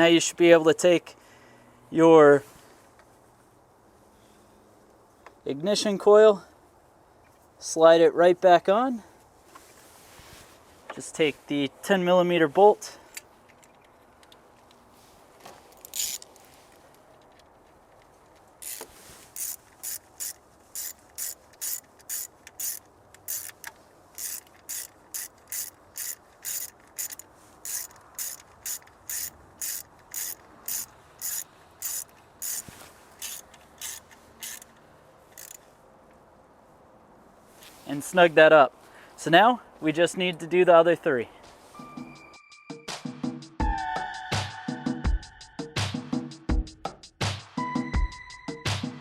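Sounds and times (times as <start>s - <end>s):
socket ratchet clicking: 15.8s - 16.4s, 18.6s - 35.6s.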